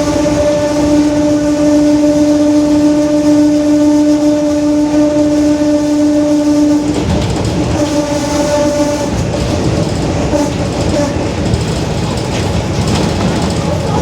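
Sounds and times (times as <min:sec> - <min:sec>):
bus rumble: 0:00.0 - 0:14.0.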